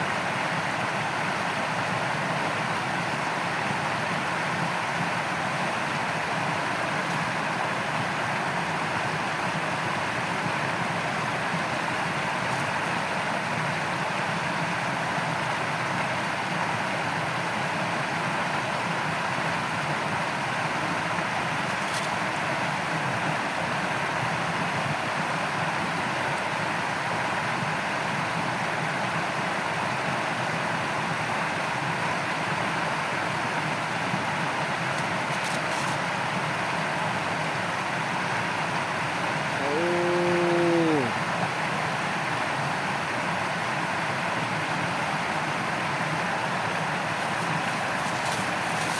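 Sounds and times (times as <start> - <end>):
stream water rushing: 41.2 - 48.9.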